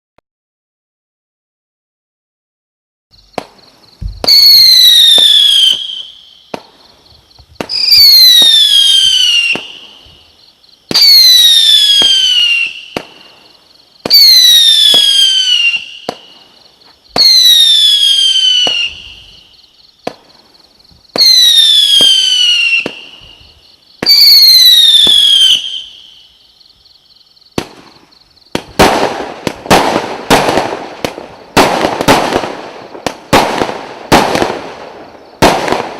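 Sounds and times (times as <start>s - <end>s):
whistling firework comets: 3.1s - 35.9s
firework launch pops: 3.2s - 7.9s, 11.9s - 13.3s, 18.6s - 19.4s, 20.0s - 20.3s, 27.5s - 35.9s
firework crackling bangs: 3.2s - 25.8s, 27.5s - 35.9s.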